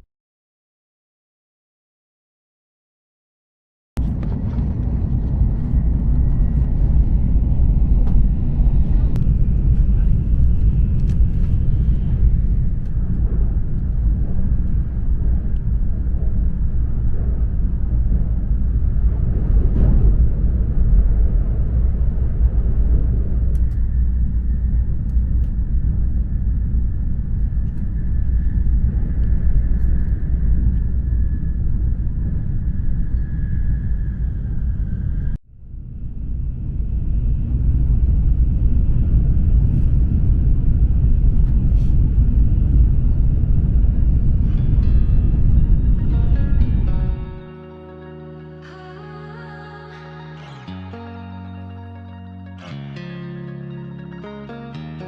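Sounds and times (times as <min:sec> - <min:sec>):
train rumble from inside car: 0:04.0 - 0:33.4, 0:36.1 - 0:47.2.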